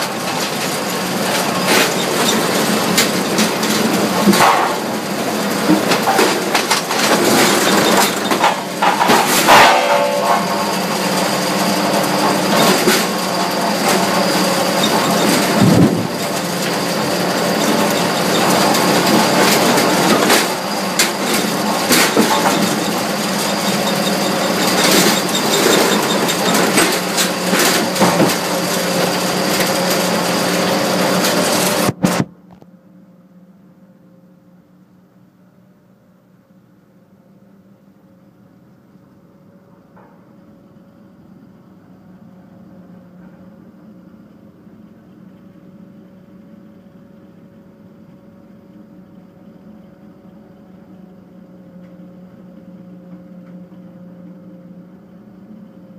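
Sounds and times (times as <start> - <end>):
debarker machine running: 0.0 - 32.4.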